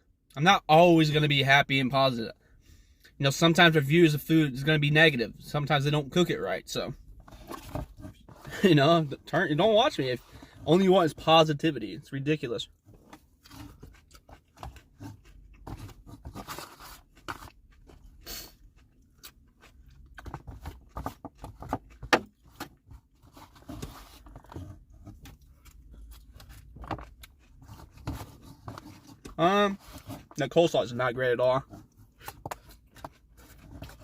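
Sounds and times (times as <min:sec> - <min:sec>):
person crunching and chewing: 0:13.0 - 0:22.5, 0:25.2 - 0:29.3.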